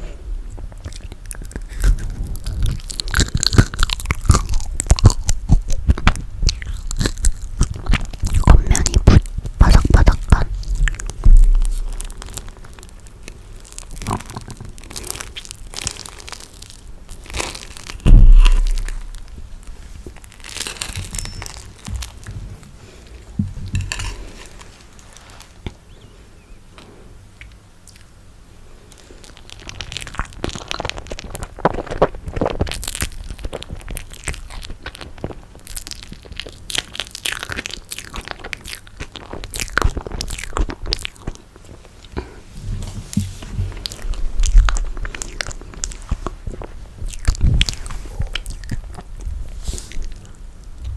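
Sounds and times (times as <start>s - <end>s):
crunching and chewing marshmallow: 0.0s - 50.9s
sticky crackles and clicks: 0.8s - 22.4s, 28.9s - 42.0s
heavy low thump: 10.5s - 12.2s, 18.0s - 19.9s.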